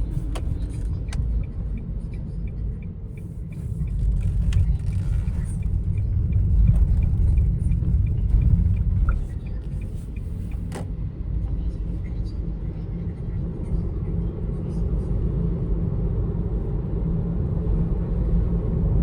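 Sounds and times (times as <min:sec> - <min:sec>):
road and tyre rumble: 0:00.0 - 0:19.0
faint regular ticking: 0:00.4 - 0:10.7.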